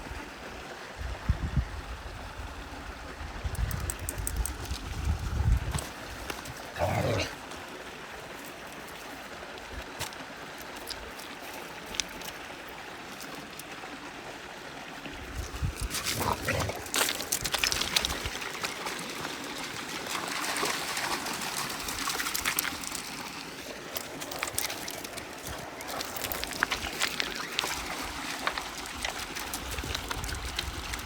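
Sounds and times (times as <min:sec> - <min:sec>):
water trickling: 0:03.5 - 0:31.0
water splashing: 0:15.3 - 0:31.0.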